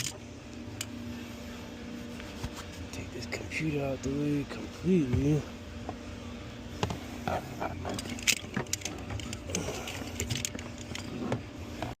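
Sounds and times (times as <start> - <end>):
wiring connectors clicking and rattling: 7.8 - 11.1.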